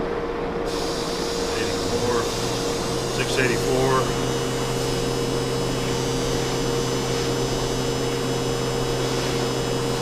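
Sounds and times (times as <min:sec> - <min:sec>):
metal lathe humming and hissing: 0:00.7 - 0:10.0.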